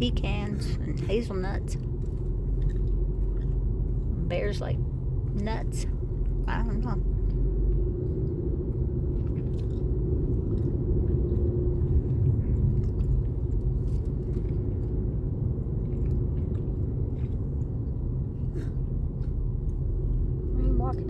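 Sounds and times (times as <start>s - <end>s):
car road rumble from inside: 0.0s - 21.0s
faint clicks and crunches: 1.8s - 4.1s, 7.2s - 18.2s.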